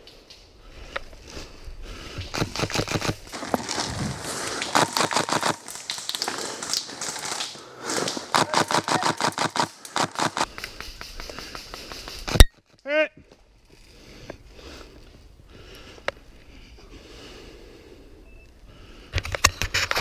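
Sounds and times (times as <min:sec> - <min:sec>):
airsoft guns firing rapidly: 0:03.7 - 0:10.5.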